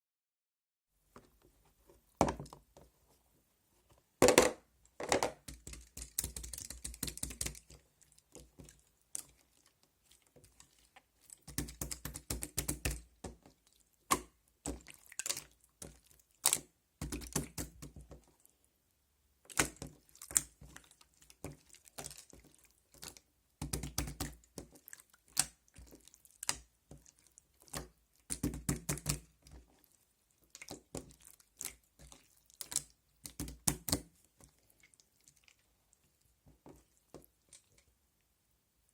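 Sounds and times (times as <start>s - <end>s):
slime clicking by hand: 5.4s - 7.8s, 11.4s - 13.4s, 14.1s - 18.2s, 23.0s - 24.7s, 25.3s - 29.4s, 32.6s - 34.1s.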